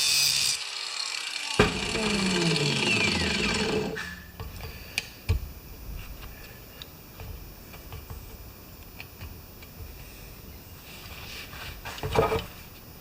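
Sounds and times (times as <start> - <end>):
small power tool spinning down: 0.0 - 4.1.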